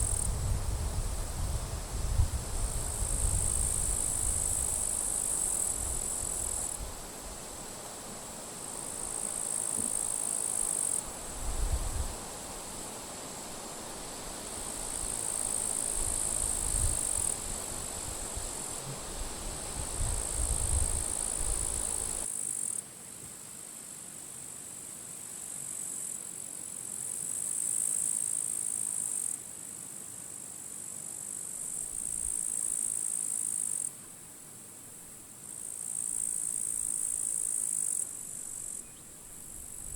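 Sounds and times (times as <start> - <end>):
wind gusts on microphone: 0.0 - 7.1, 11.2 - 12.2, 16.0 - 22.2
grasshoppers chirring: 2.7 - 11.4, 12.4 - 22.7.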